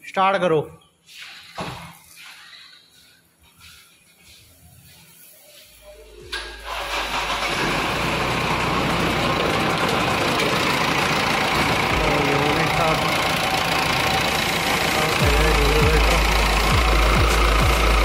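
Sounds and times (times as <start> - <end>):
diesel engine starting and idling: 6.3 - 18.0.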